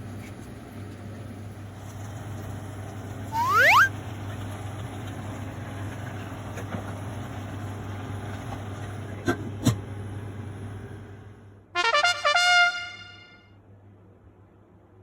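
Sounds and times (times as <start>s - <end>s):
rising whistle sound effect: 3.3s - 3.9s.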